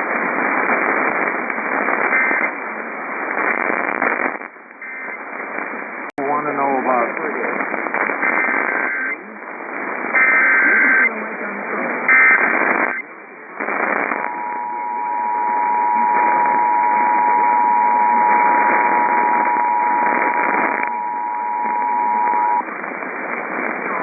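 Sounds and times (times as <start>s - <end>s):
radio static hiss: 0.0s - 24.0s
data bursts: 7.9s - 9.2s, 10.1s - 11.1s, 12.1s - 13.0s, 13.6s - 22.7s.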